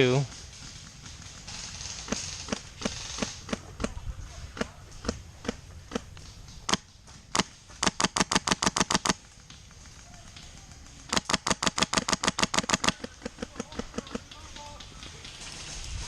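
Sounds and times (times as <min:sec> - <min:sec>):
airsoft guns firing: 0:06.6 - 0:15.6.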